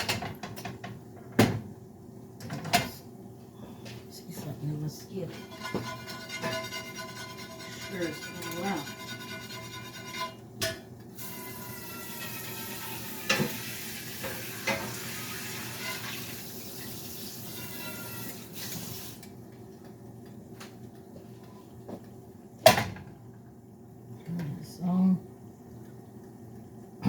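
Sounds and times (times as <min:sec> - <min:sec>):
pots or dishes knocking: 0:05.3 - 0:10.9
tap running water: 0:11.1 - 0:20.0.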